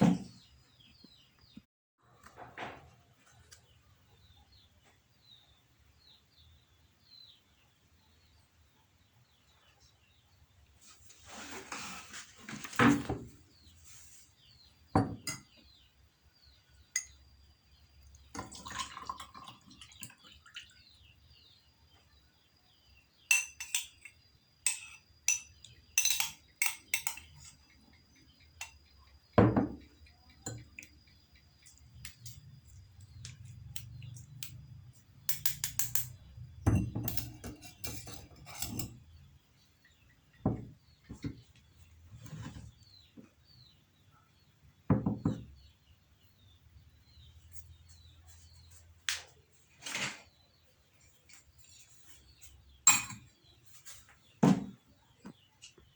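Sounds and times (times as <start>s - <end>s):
utensils and dishes clinking: 23.3s - 27.6s, 35.3s - 39.2s, 52.8s - 53.3s.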